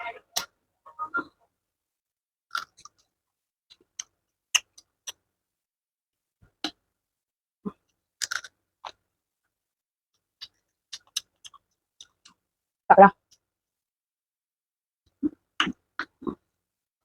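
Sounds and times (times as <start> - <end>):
crab being chewed crunching: 2.5 - 3.0, 8.2 - 9.0.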